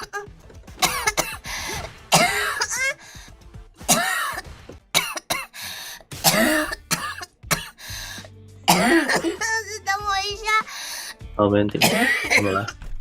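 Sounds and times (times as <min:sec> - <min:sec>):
girl coughing: 0:00.8 - 0:01.4, 0:02.1 - 0:03.0, 0:03.9 - 0:04.4, 0:05.0 - 0:05.5, 0:06.2 - 0:07.8, 0:08.7 - 0:09.6, 0:11.8 - 0:12.7.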